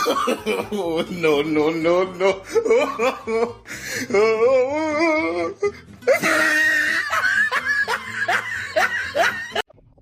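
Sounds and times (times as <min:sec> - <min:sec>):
laughter: 0:00.0 - 0:01.6, 0:02.5 - 0:03.6, 0:06.1 - 0:09.7
music: 0:00.0 - 0:10.0.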